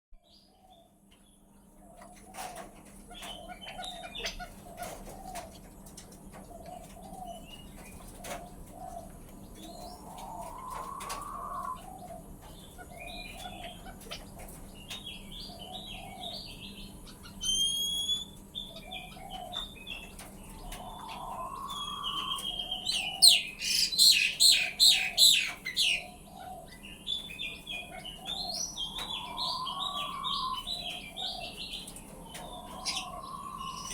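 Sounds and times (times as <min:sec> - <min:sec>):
quail calling: 0:09.7 - 0:14.2, 0:20.5 - 0:26.7, 0:27.8 - 0:33.9.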